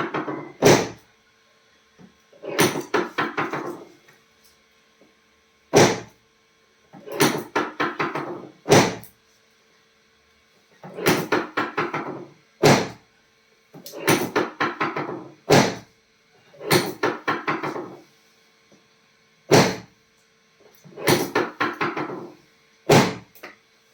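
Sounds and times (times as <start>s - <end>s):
knocks and thuds: 0.0s - 1.0s, 5.7s - 6.1s, 7.2s - 9.0s, 11.0s - 13.0s, 14.1s - 15.9s, 19.5s - 19.9s, 22.9s - 23.3s.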